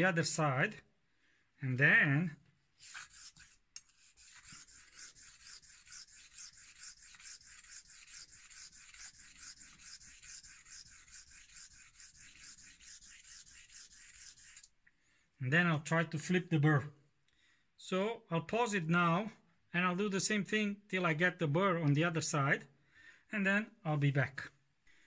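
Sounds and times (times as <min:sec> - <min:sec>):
razor blade scraping on whetstone: 0:02.8 - 0:14.7.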